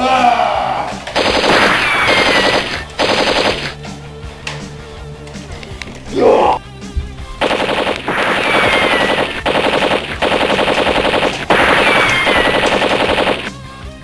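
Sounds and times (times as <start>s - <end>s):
machine-gun fire: 1.2s - 3.8s, 7.4s - 13.6s.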